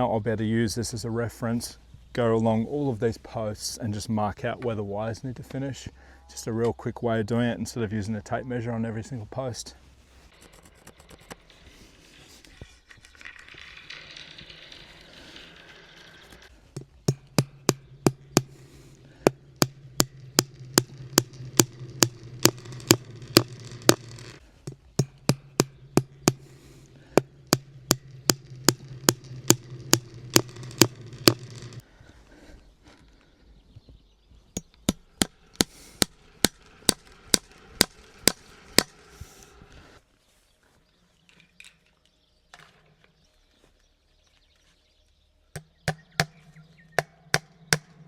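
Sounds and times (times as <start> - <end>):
hammer blows on fence staples: 16.8 - 31.8, 34.6 - 39.1.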